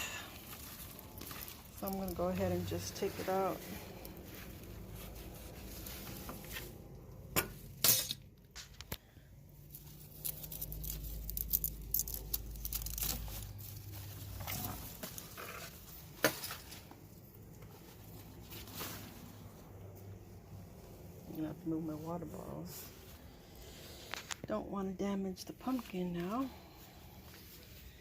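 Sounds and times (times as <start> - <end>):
leaves and vines rustling: 0.0 - 7.0, 9.6 - 24.1
plant stems cracking: 8.9 - 16.8.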